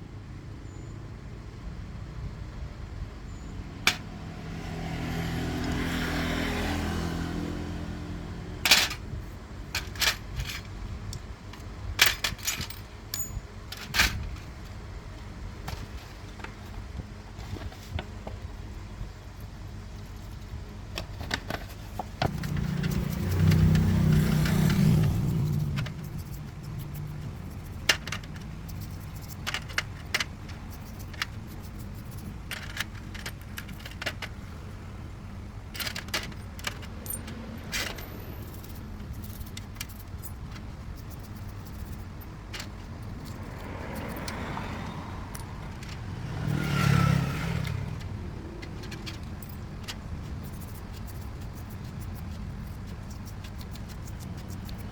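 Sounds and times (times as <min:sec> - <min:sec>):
steady low hum: 0:07.5 - 0:46.6
metallic clinks and taps: 0:12.0 - 0:14.1, 0:35.8 - 0:40.7, 0:41.7 - 0:46.0.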